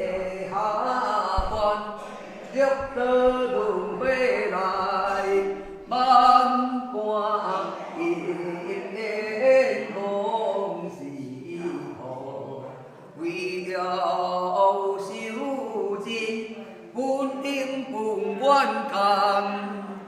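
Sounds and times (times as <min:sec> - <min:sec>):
woman singing unaccompanied chant: 0:00.0 - 0:10.6.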